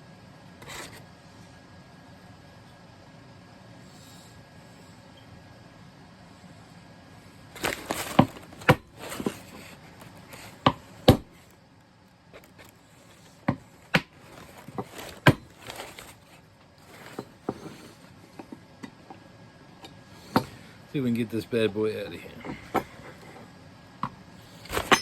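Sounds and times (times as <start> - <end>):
small metal parts clinking: 24.7 - 25.0.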